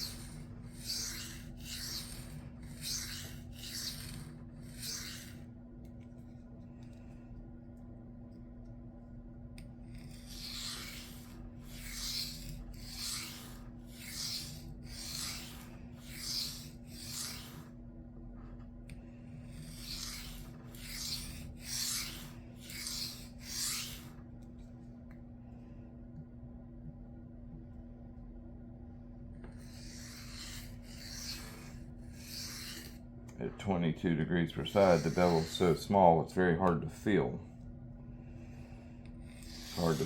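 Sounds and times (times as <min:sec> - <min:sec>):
knife scraping on sharpening stone: 0:00.0 - 0:05.4, 0:09.9 - 0:17.6, 0:19.4 - 0:24.1, 0:29.8 - 0:33.0.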